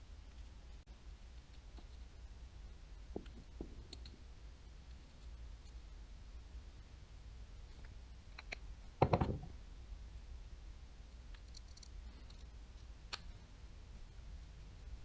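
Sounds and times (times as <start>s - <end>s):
small parts clicking: 3.2s - 4.2s, 7.7s - 8.7s, 11.3s - 13.4s.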